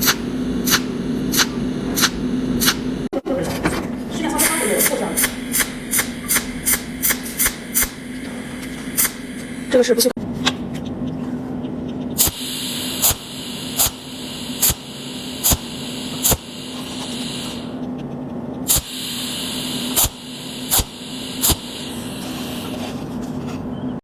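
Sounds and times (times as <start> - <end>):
welding machine pulse cracks: 0.0 - 2.9, 4.2 - 10.1, 12.2 - 17.7, 18.7 - 22.8
low machine hum: 0.0 - 24.0.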